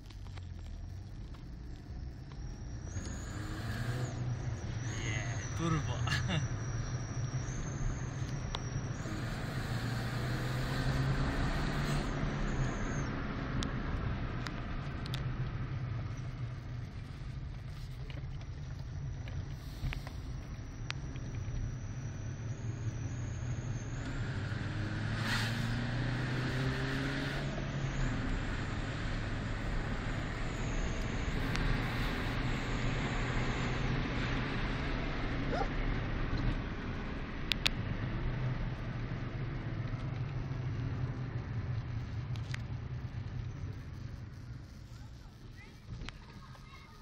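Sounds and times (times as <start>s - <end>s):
car engine accelerating: 0.0s - 46.8s
high-pitched exhaust whistle: 2.4s - 13.2s, 19.3s - 34.0s.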